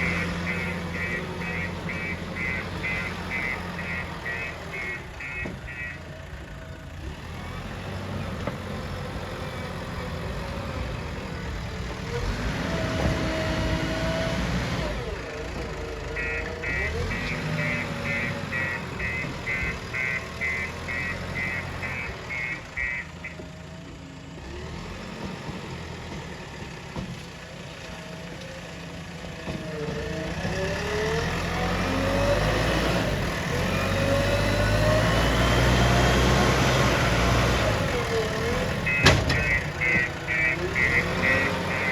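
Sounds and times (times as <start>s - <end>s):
reversing alarm beeping: 0.0s - 6.1s, 16.1s - 23.4s, 37.5s - 41.9s
diesel engine revving: 0.0s - 41.9s.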